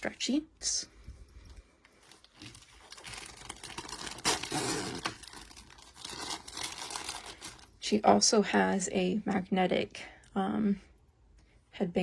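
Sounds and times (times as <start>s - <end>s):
plastic packaging crinkling: 1.9s - 7.8s.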